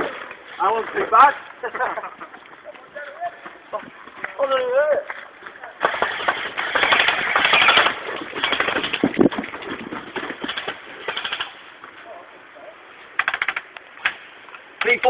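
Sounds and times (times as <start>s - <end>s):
airsoft guns firing bursts: 5.8s - 9.2s, 10.4s - 11.6s.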